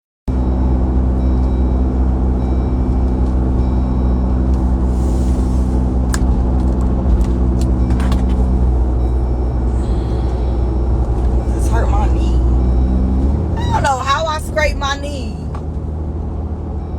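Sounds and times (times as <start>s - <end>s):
steady low rumble: 0.3s - 16.9s
humming tone: 7.6s - 15.8s.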